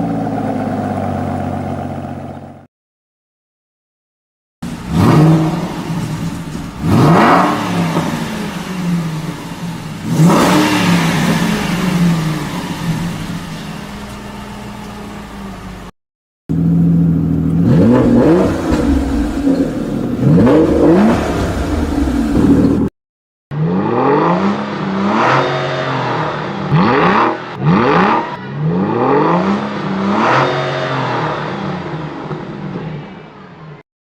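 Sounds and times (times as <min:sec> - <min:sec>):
car engine running: 0:00.0 - 0:02.7, 0:04.6 - 0:15.9, 0:16.5 - 0:22.9.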